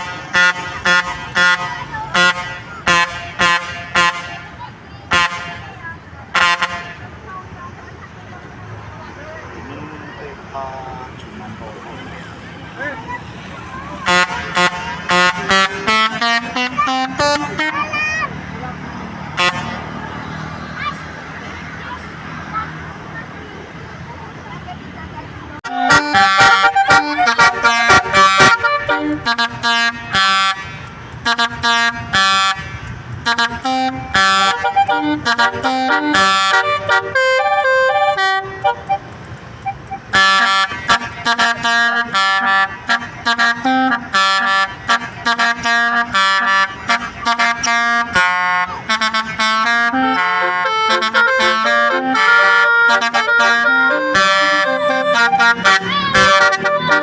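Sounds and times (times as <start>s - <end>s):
bus musical horn melody: 0.0s - 7.1s, 14.0s - 18.2s, 19.3s - 20.0s, 25.6s - 57.0s.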